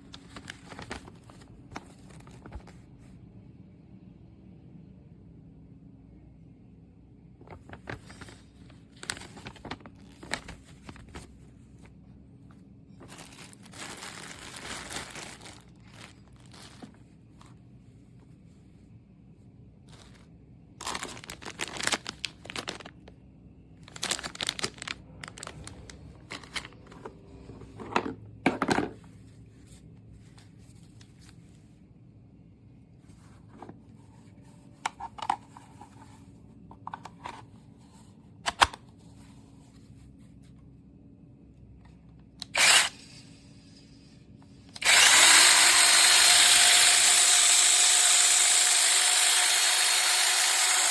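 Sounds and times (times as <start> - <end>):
packaging crinkling and rustling: 0.0 - 2.8, 7.4 - 11.9, 13.0 - 17.6, 19.9 - 23.2, 23.8 - 31.6.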